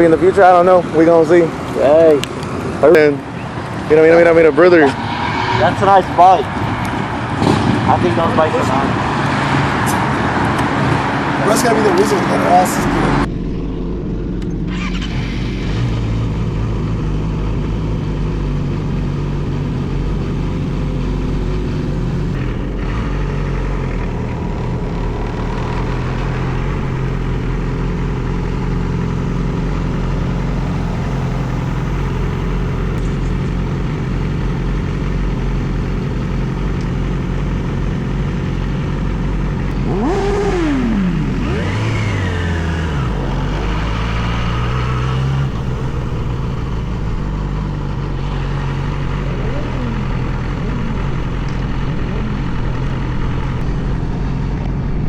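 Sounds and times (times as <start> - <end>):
vehicle engine running: 11.4 - 55.0.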